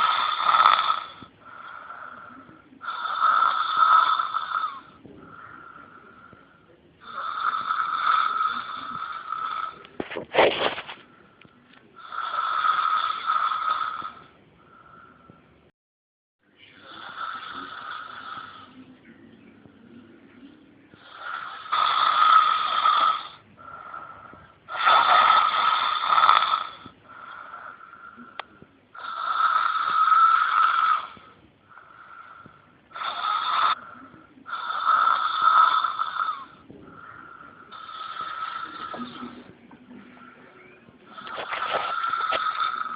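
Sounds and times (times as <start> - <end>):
boy snoring loudly: 0.0 - 5.8, 7.0 - 9.9, 12.0 - 14.2, 16.8 - 18.8, 21.0 - 24.0, 24.7 - 27.8, 29.0 - 31.2, 32.9 - 33.8, 34.5 - 39.5, 41.1 - 42.9
quiet breaths: 0.0 - 15.7, 16.4 - 42.9.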